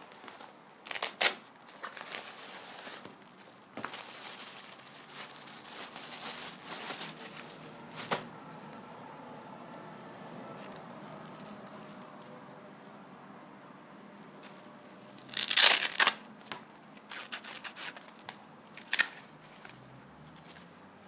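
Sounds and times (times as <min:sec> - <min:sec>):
packaging crinkling and rustling: 0:00.0 - 0:08.3, 0:14.4 - 0:21.0.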